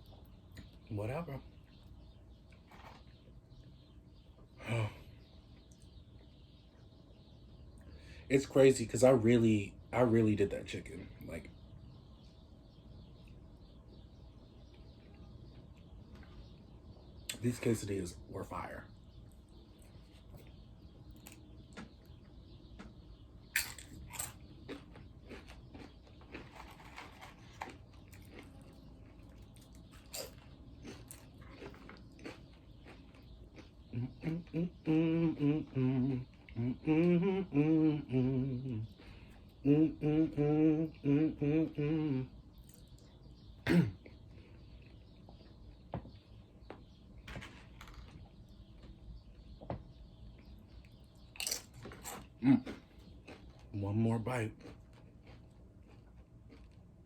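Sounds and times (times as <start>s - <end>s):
biting and chewing: 19.2s - 34.9s, 42.5s - 57.0s
person chewing: 23.6s - 39.3s, 50.8s - 53.7s, 54.5s - 57.0s.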